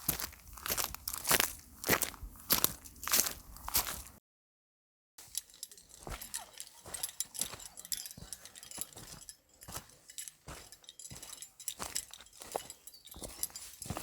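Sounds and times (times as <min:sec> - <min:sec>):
light jingling and clinking: 0:05.2 - 0:14.0.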